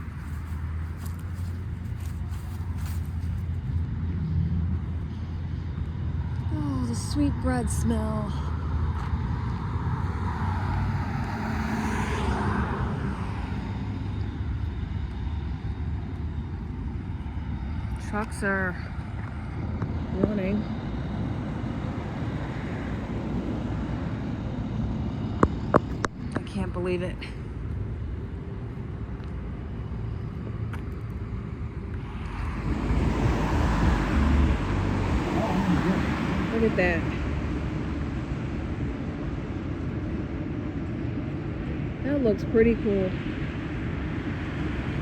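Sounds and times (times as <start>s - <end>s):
car engine and road rumble: 0.0s - 45.0s
car driving heard from inside: 31.8s - 39.6s.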